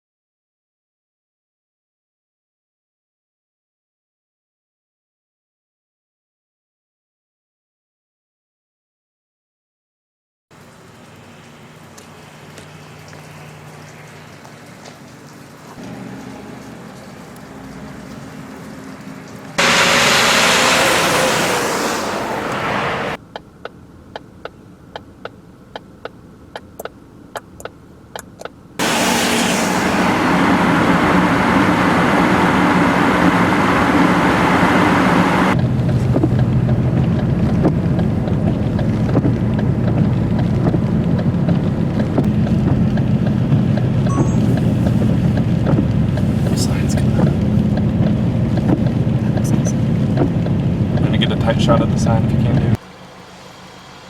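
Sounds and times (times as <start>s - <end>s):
vehicle engine hum: 10.5s - 54.0s
road and wind rushing: 15.5s - 27.7s, 28.4s - 54.0s.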